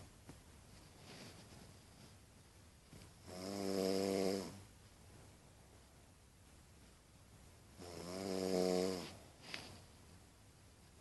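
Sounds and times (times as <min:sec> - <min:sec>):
faint hiss: 0:00.0 - 0:11.0
person snoring: 0:03.3 - 0:04.6, 0:07.8 - 0:09.2.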